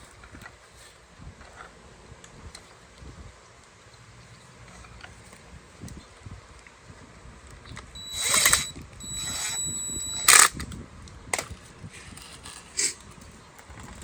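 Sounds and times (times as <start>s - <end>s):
power drill whining: 8.0s - 10.6s
sharp clicks: 8.0s - 10.7s.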